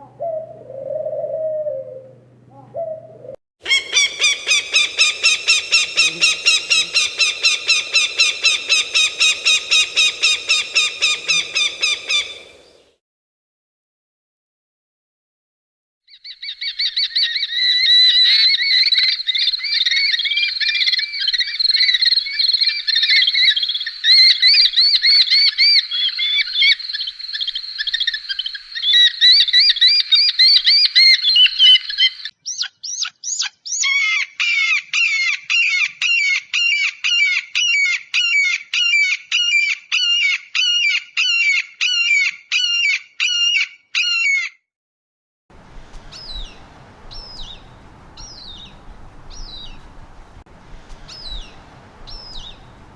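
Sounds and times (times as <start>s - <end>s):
birds twittering: 3.6s - 12.9s, 45.6s - 52.9s
background hiss: 3.7s - 12.9s, 45.5s - 52.9s.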